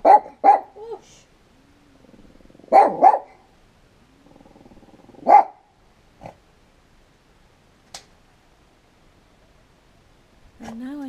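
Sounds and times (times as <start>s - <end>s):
dog barking: 0.0s - 0.8s, 2.7s - 3.4s, 5.2s - 5.6s
dog growling: 1.6s - 3.1s, 4.0s - 5.3s.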